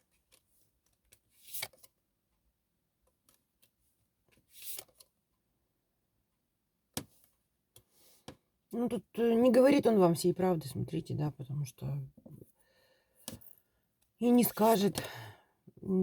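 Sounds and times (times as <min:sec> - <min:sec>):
cards sliding swishes: 0:01.4 - 0:01.9, 0:04.5 - 0:05.0.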